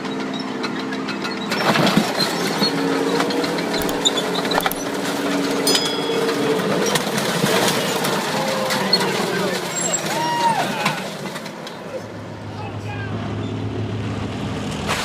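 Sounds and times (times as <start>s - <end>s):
sharp clanks and knocks: 0.0s - 10.1s
heavy machine engine running: 0.0s - 15.0s.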